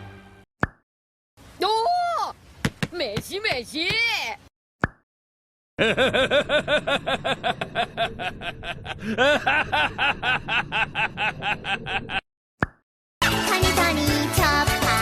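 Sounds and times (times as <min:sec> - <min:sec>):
cartoon character laughing: 0:05.8 - 0:12.2.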